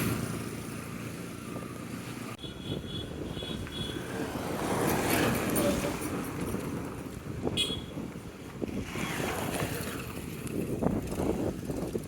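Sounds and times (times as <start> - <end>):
traffic noise: 0.0 - 12.0
wind buffeting microphone: 2.5 - 12.0.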